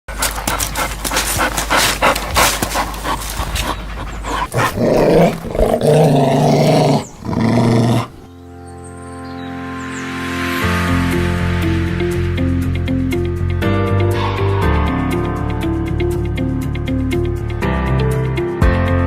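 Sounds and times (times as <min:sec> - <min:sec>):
dog low drawn-out vocal sounds: 0:00.1 - 0:08.3
dog panting: 0:00.1 - 0:08.3.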